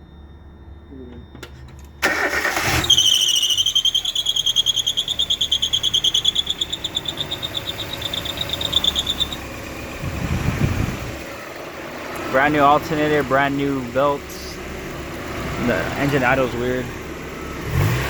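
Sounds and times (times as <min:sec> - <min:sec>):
high pulsing squeak: 0:00.0 - 0:09.6
car engine cranking and starting: 0:01.0 - 0:18.0.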